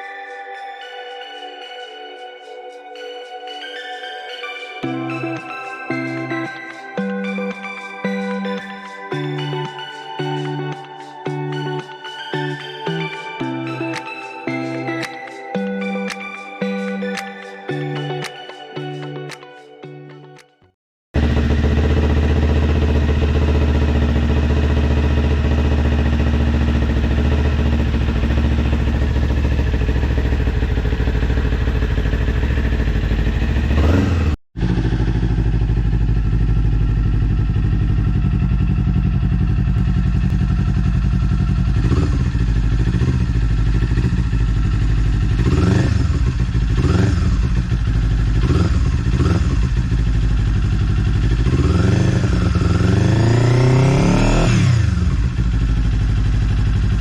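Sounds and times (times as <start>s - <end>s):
motorcycle engine idling and revving: 21.2s - 57.0s.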